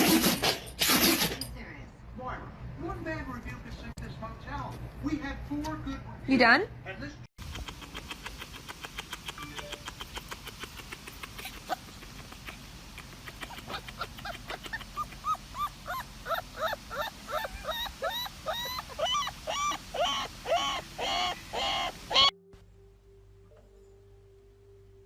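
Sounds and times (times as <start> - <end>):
short animal calls: 13.2 - 22.3.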